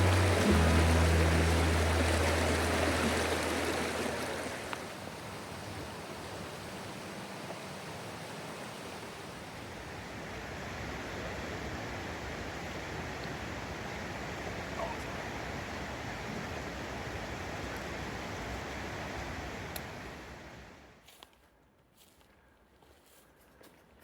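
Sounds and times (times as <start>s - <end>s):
low held music chord: 0.0s - 4.7s
stream rushing: 0.0s - 20.8s.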